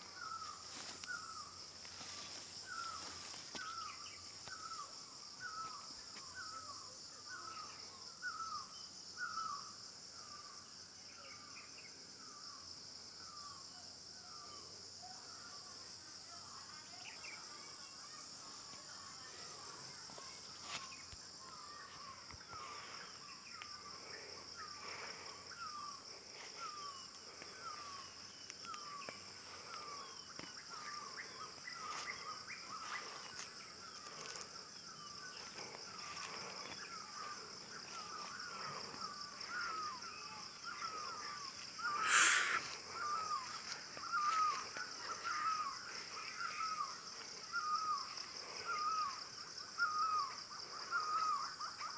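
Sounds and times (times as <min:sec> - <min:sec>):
high insect buzz: 0:41.8 - 0:43.3
bird calling repeated notes: 0:42.0 - 0:42.6.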